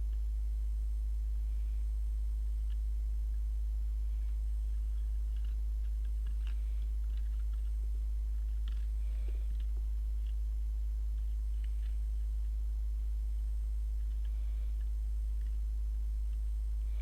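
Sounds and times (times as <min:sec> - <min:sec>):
low electrical hum: 0:00.0 - 0:17.0
small clicks and taps: 0:04.2 - 0:10.4.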